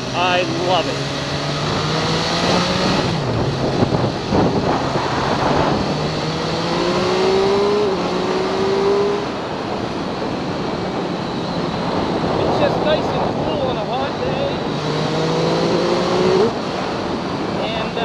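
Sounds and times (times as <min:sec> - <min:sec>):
motorcycle engine accelerating: 0:00.0 - 0:18.0.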